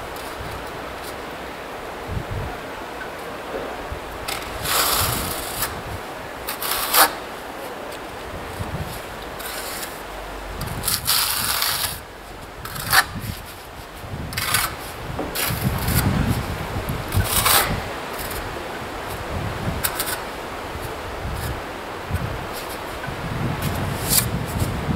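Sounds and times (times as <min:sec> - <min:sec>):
trowel scraping mortar on wall: 0:04.3 - 0:05.8, 0:06.4 - 0:07.3, 0:08.9 - 0:10.0, 0:10.6 - 0:12.0, 0:12.6 - 0:13.7, 0:14.3 - 0:16.4, 0:17.1 - 0:18.4, 0:19.8 - 0:20.2.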